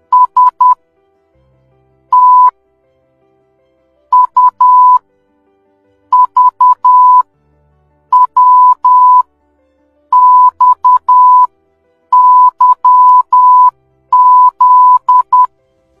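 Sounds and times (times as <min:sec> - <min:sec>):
morse code beeps: 0:00.0 - 0:00.8, 0:02.1 - 0:02.5, 0:04.1 - 0:05.0, 0:06.1 - 0:07.2, 0:08.1 - 0:09.2, 0:10.1 - 0:11.5, 0:12.1 - 0:15.5.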